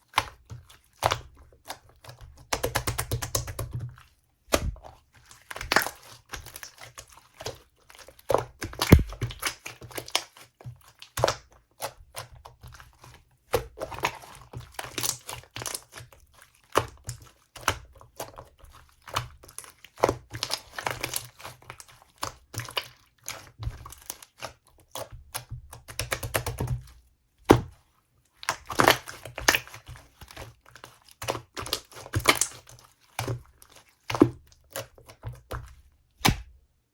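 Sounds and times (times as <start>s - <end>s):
slime squeezed by hand: 8.8s - 9.4s.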